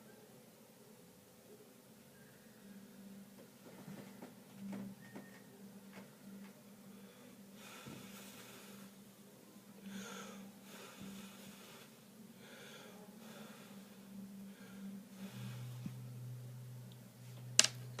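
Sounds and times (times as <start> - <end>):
steady low hum: 0.0 - 18.0
person breathing near microphone: 6.8 - 9.1, 9.8 - 16.1.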